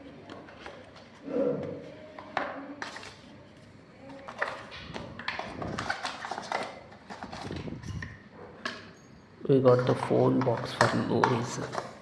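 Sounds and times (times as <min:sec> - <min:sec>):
hands handling parcel packaging: 0:02.3 - 0:08.8.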